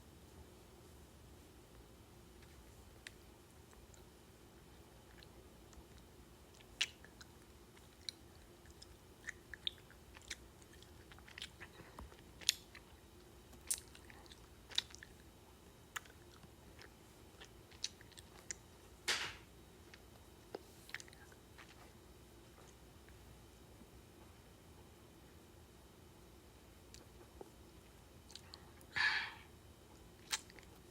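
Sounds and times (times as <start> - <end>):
chewing and crunching candy: 4.7 - 19.0, 19.8 - 22.8, 28.2 - 28.9, 30.0 - 30.9.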